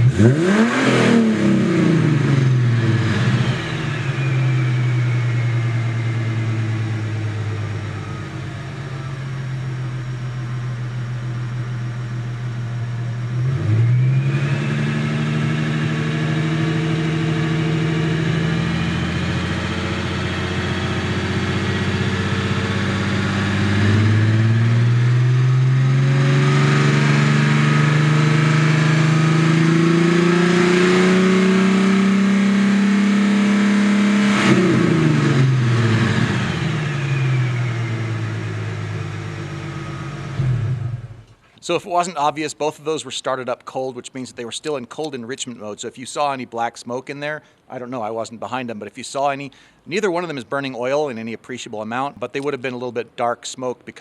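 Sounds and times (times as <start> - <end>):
car engine revving: 0.0 - 42.4.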